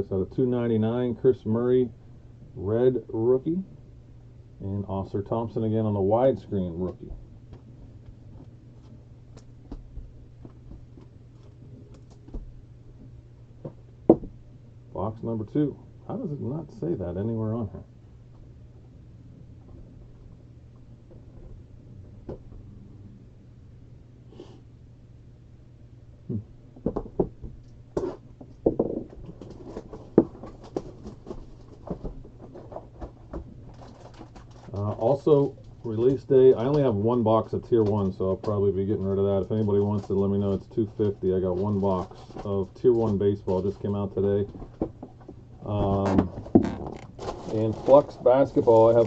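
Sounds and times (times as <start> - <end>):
low hum: 0.0 - 49.0
cards and packaging handled: 29.3 - 36.2, 45.7 - 49.0.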